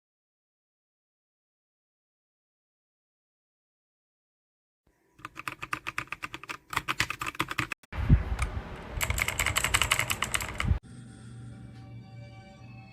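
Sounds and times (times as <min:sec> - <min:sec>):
mechanical keyboard typing: 0:05.2 - 0:07.8, 0:09.0 - 0:10.8.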